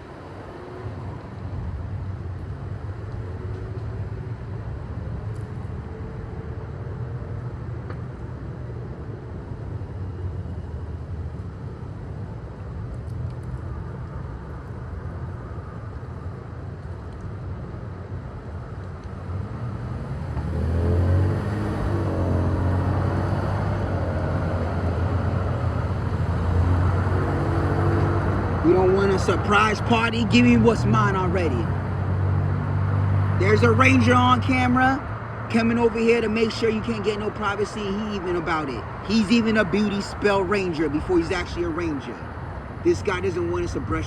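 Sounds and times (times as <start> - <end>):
vehicle engine running: 33.4 - 42.0.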